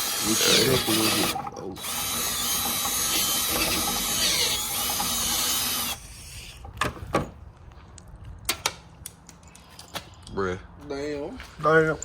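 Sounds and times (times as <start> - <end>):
power drill running: 0.0 - 6.0.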